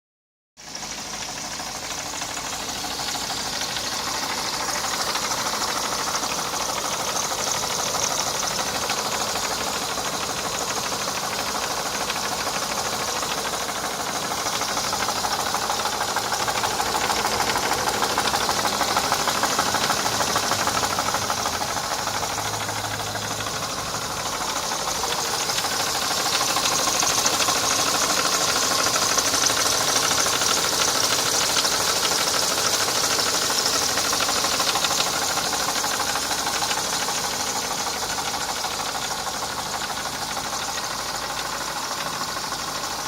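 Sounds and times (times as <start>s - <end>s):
car engine knocking: 0.6s - 43.0s.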